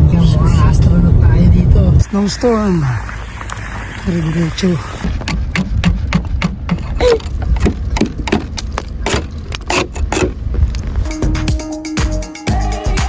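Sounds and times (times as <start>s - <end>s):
wind rumbling on microphone: 0.0s - 2.1s, 5.0s - 11.1s
crackles and knocks: 5.0s - 11.0s
music: 11.0s - 13.0s.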